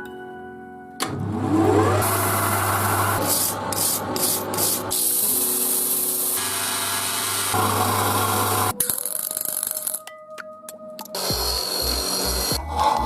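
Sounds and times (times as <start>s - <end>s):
power tool grinding metal: 1.8s - 8.7s, 11.2s - 13.0s.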